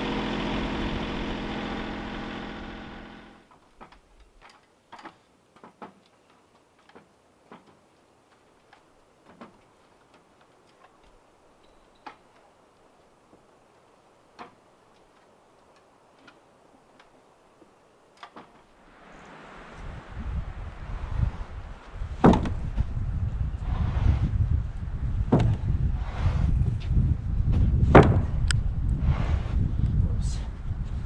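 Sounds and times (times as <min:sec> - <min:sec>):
tractor engine: 0:00.0 - 0:05.1.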